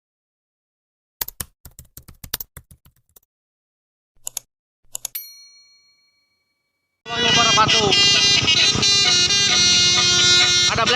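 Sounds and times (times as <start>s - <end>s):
typing keystrokes: 1.2s - 3.2s, 4.2s - 5.2s
bell ding: 5.2s - 7.0s.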